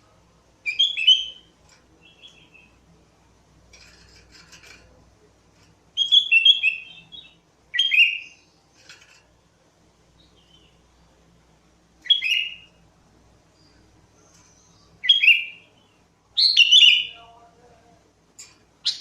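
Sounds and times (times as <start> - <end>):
bird whistled song phrases: 0.6 - 1.5, 6.0 - 8.4, 12.0 - 12.7, 15.0 - 17.2.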